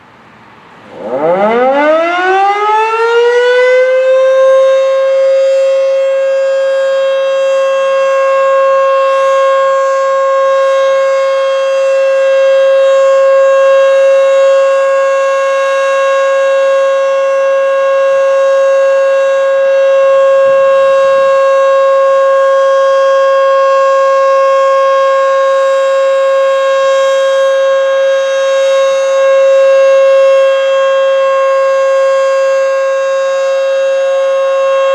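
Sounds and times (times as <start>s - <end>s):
siren winding up and wailing: 0.9s - 4.5s.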